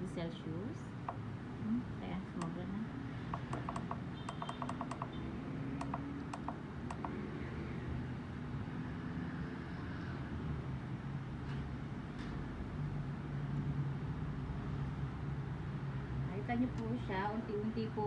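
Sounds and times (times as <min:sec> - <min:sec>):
low steady hum: 0:00.0 - 0:04.2
controller button beeps: 0:03.4 - 0:05.2, 0:05.8 - 0:07.1.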